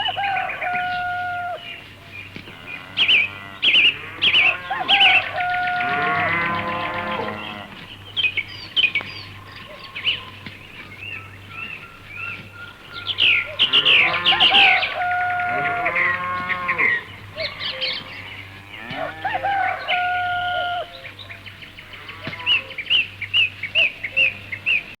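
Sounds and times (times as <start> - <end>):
small birds chirping: 0.0 - 25.0
cow mooing: 2.5 - 7.8, 13.5 - 20.9.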